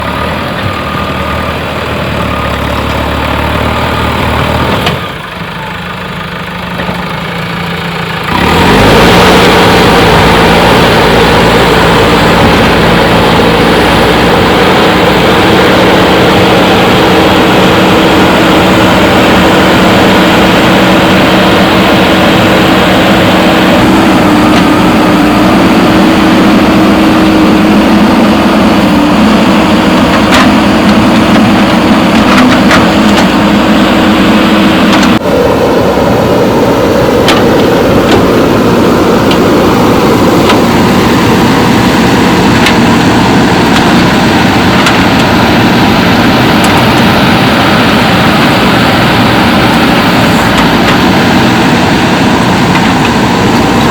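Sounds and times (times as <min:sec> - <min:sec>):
diesel engine idling and revving: 0:00.0 - 0:53.9.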